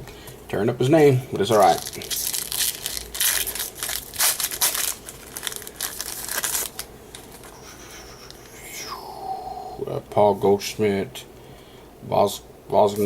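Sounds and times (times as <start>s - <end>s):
foil wrapper crinkling: 1.4s - 7.5s.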